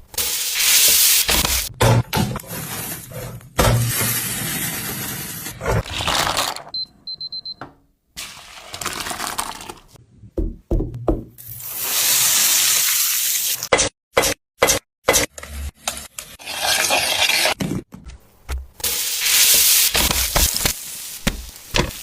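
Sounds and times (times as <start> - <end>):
loud cooking hiss: 11.6 - 13.5, 18.8 - 22.0.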